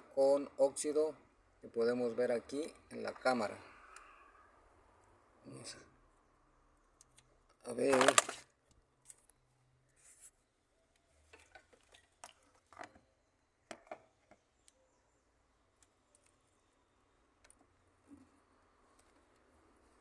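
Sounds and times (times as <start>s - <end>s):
handling clicks and scrapes: 7.8s - 9.3s.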